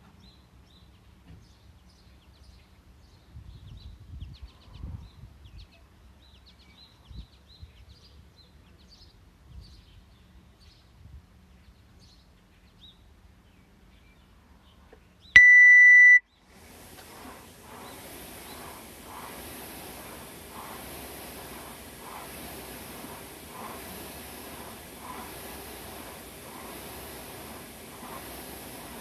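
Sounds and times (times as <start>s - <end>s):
long electronic beep: 15.4s - 16.2s
steady rushing noise: 16.6s - 29.0s.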